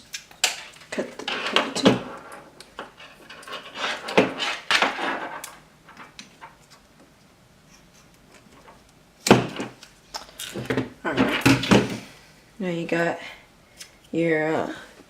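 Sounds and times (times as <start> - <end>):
handling scrapes and clacks: 0.4 - 6.8.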